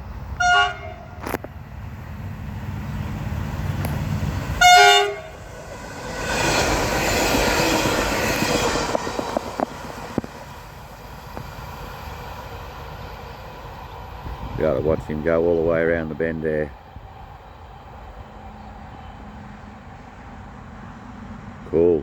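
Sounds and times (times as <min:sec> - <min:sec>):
diesel train engine rumble: 0:00.0 - 0:22.0
train wheel and rail noise: 0:00.0 - 0:22.0
train horn: 0:00.4 - 0:01.4, 0:04.6 - 0:05.5
rail joint clicks: 0:01.0 - 0:01.8, 0:02.8 - 0:15.8.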